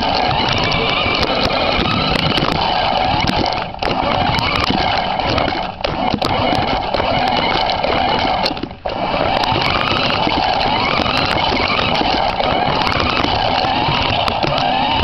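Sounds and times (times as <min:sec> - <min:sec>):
toy car motor whining: 0:00.0 - 0:15.0
wheels ticking and rattling: 0:00.0 - 0:15.0.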